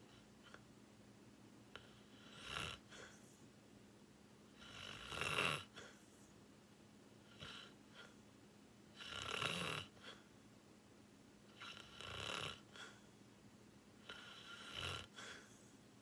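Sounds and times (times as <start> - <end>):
faint steady hum: 0.0 - 16.0
short breath: 12.7 - 13.1, 15.1 - 15.8.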